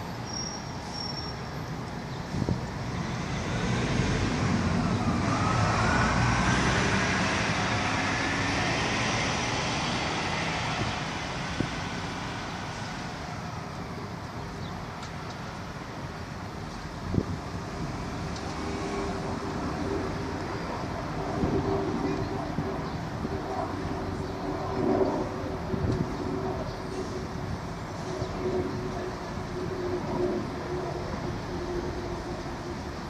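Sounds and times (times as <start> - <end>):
vehicle passing: 2.8 - 13.4.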